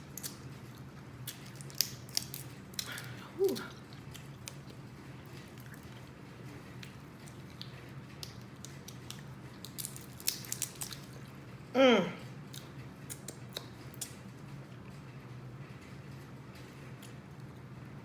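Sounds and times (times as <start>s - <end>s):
wet mouth smacks and clicks: 12.5s - 14.2s.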